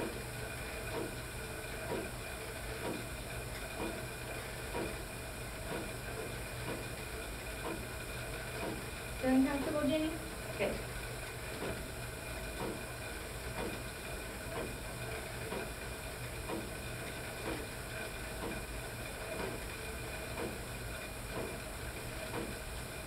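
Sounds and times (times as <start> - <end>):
flywheel whirring: 0.0 - 23.0
soft pedal ticks: 0.8 - 5.0, 5.6 - 10.8, 11.5 - 11.9, 12.5 - 12.9, 13.5 - 14.8, 15.4 - 20.7, 21.3 - 22.7.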